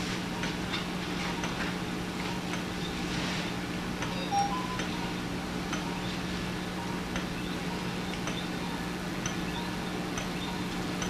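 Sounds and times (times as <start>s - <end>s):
equipment humming: 0.0s - 11.0s
instrument clicks: 4.0s - 6.1s, 6.9s - 11.0s
electronic beep: 4.1s - 6.2s, 6.8s - 10.8s.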